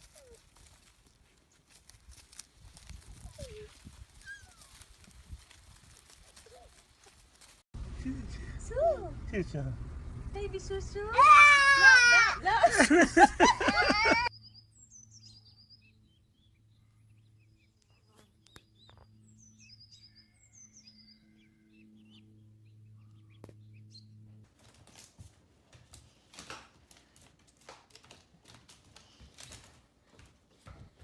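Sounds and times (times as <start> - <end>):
low steady hum: 7.8 - 11.2.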